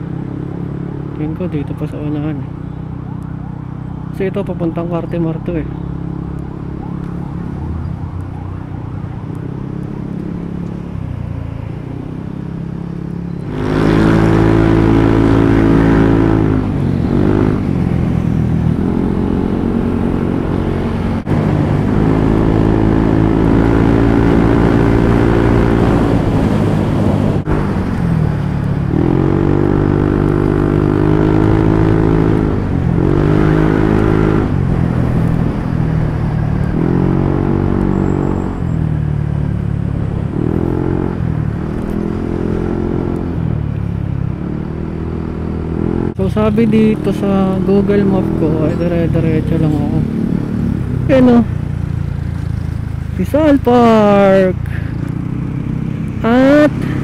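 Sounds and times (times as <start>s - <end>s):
scooter engine revving: 44.4s - 57.0s.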